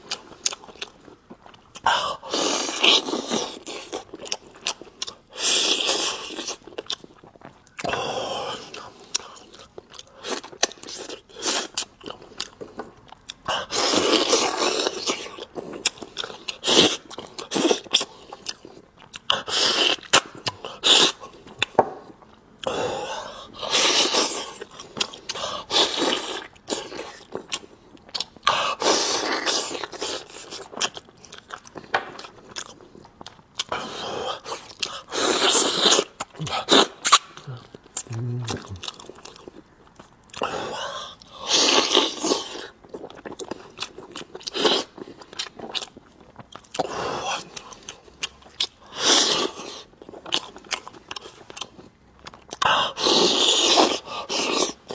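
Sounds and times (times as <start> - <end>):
person chewing meat: 0.0 - 54.9
breathy sounds: 36.4 - 39.0.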